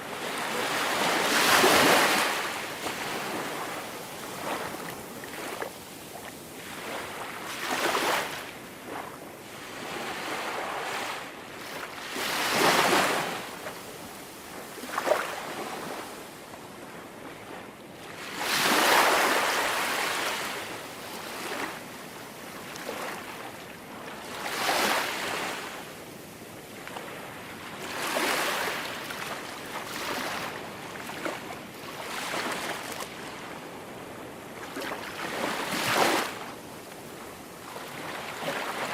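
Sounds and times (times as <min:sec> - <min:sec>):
small waves breaking on sand: 0:00.0 - 0:38.9.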